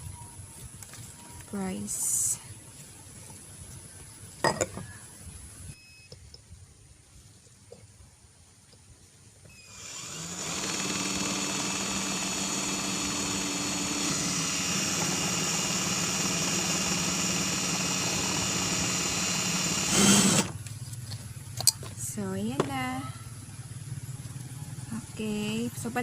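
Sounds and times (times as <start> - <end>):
electric drill drilling: 9.5 - 20.6.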